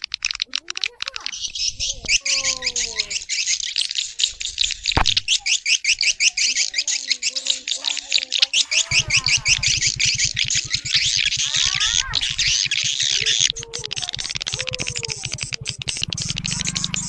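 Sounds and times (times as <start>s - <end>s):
swiftlets twittering: 0.0s - 17.0s
fast low pulse: 8.8s - 17.0s.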